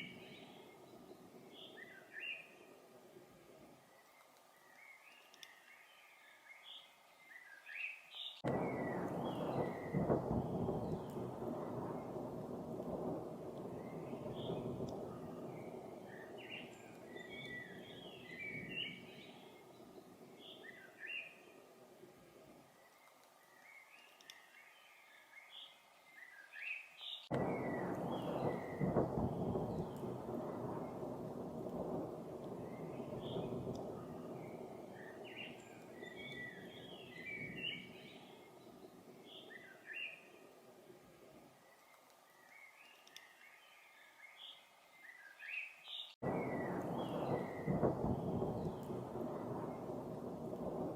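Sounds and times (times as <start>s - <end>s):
songbird chirping: 0.0s - 50.9s
distant thunder rumbling: 8.4s - 22.0s, 27.3s - 40.0s, 46.2s - 50.9s.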